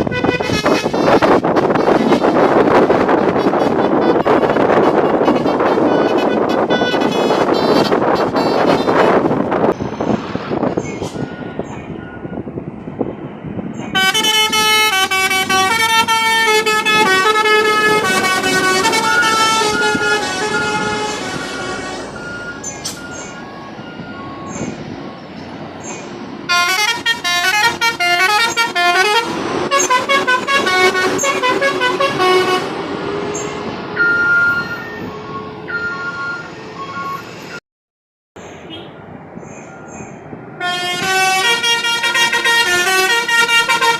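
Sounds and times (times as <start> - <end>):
multi-tone musical horns: 0.0 - 9.3, 14.0 - 22.2, 26.5 - 33.6, 40.6 - 43.9
road traffic noise: 0.0 - 37.6, 38.4 - 43.9.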